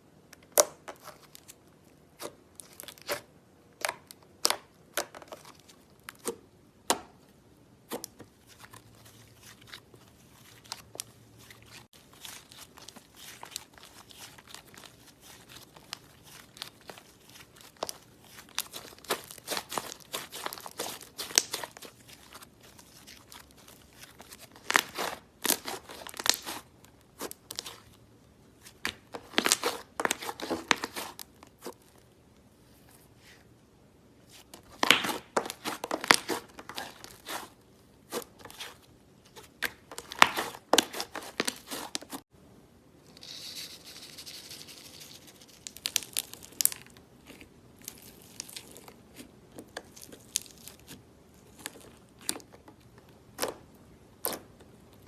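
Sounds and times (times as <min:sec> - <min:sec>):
slime crackling and popping: 0:11.8 - 0:27.9, 0:45.5 - 0:49.0.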